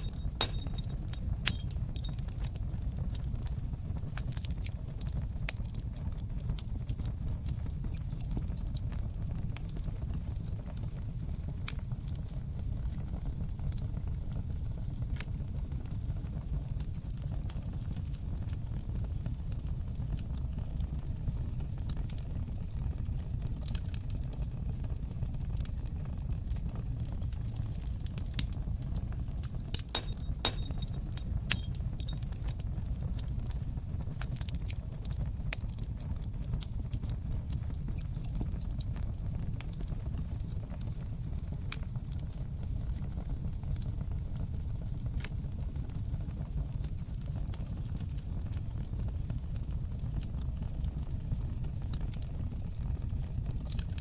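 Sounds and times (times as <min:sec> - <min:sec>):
fire crackling and popping: 0:00.0 - 0:54.0
fire rumbling: 0:00.0 - 0:54.0.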